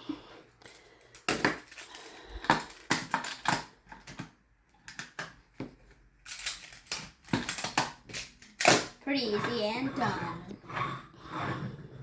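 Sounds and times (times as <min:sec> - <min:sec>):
plastic tiles clicking together: 0:06.2 - 0:09.0.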